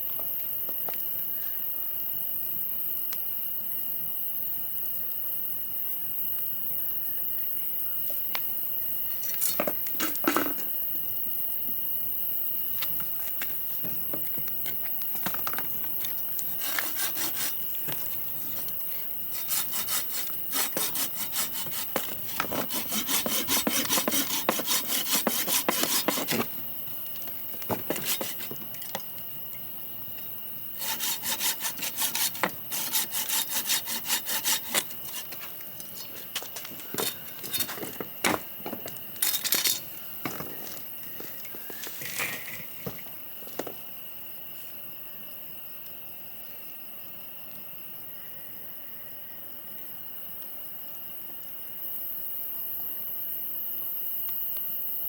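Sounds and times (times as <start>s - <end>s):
steady hiss: 0.0s - 43.3s
saw cutting through wood: 16.6s - 17.6s, 19.3s - 26.6s, 27.7s - 28.6s, 30.8s - 35.5s.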